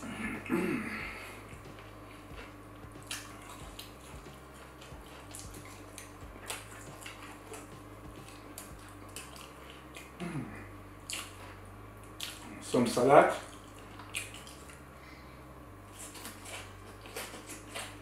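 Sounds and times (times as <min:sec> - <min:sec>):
close chewing: 0:01.0 - 0:10.2, 0:11.0 - 0:12.6, 0:13.4 - 0:14.9, 0:15.9 - 0:18.0
wet mouth and lip clicks: 0:11.1 - 0:11.4, 0:13.5 - 0:14.8.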